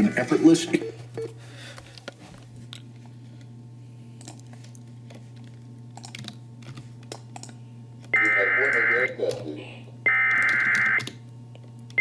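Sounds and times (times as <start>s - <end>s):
low electrical hum: 0.0s - 12.0s.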